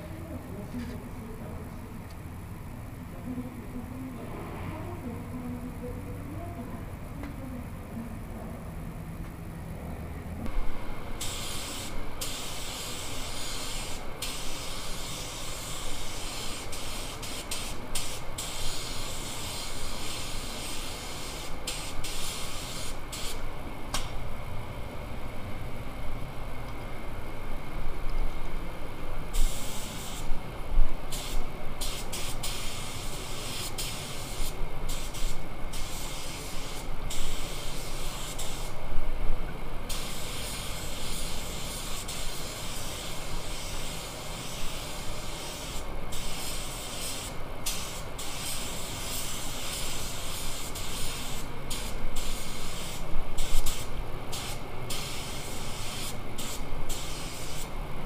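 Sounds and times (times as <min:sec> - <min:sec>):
paint spray gun hissing: 0:11.2 - 0:23.4, 0:29.3 - 0:30.3, 0:31.1 - 0:38.8, 0:39.9 - 0:57.7.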